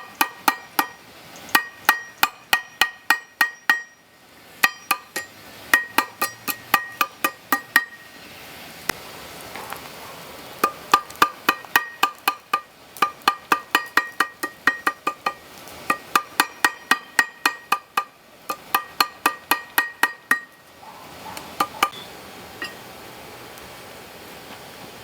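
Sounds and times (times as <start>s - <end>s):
hammer striking steel: 0.0s - 8.1s, 10.6s - 20.7s.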